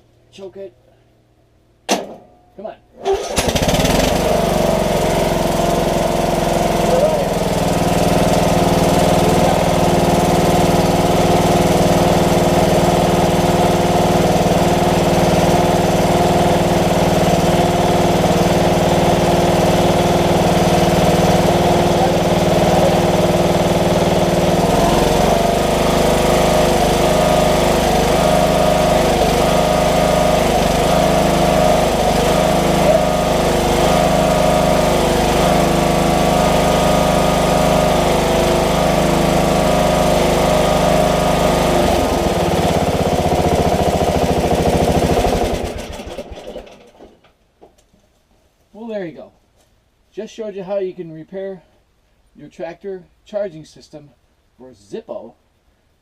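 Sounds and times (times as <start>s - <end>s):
tractor engine running: 3.1s - 47.1s.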